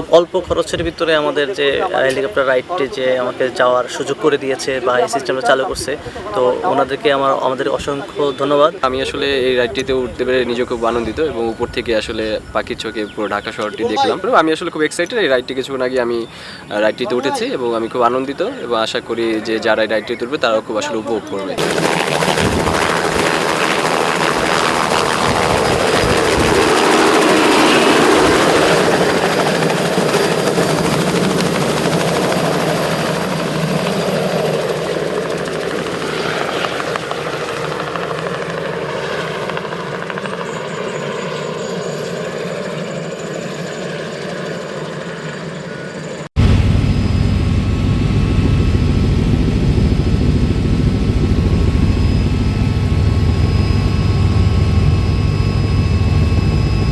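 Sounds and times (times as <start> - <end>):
helicopter flying past: 0.0 - 14.4, 15.7 - 56.9
deeper helicopter drone: 16.0 - 56.9.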